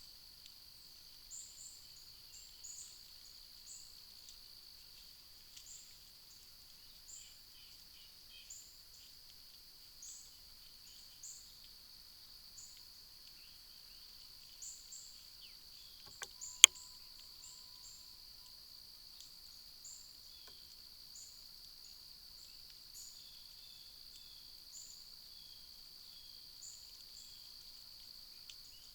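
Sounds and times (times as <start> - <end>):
insect chirps: 0.0 - 28.9
sharp click: 16.1 - 16.7.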